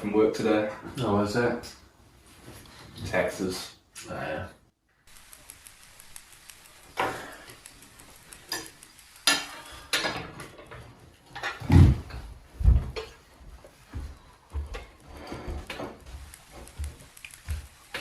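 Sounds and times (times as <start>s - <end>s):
sharp knocks and clatters: 8.5s - 13.3s, 13.9s - 18.0s.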